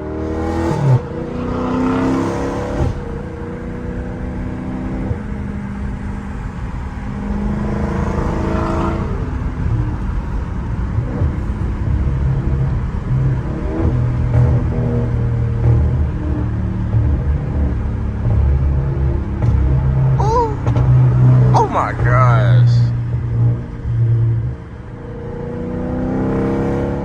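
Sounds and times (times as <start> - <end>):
car exhaust accelerating: 0.0 - 21.6.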